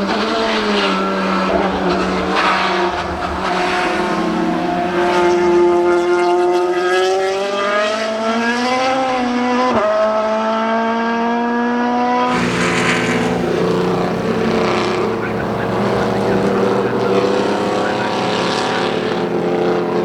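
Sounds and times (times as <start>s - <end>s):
gear change: 0.0s - 6.4s, 12.3s - 20.0s
another car engine: 0.0s - 8.1s, 12.3s - 20.0s
racing car engine revving: 0.0s - 11.6s, 12.3s - 20.0s.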